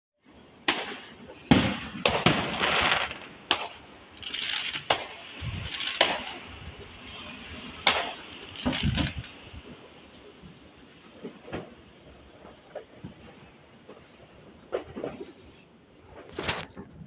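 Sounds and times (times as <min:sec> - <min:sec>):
fireworks crackling hiss: 0:00.3 - 0:16.9
fireworks banging: 0:00.6 - 0:15.4.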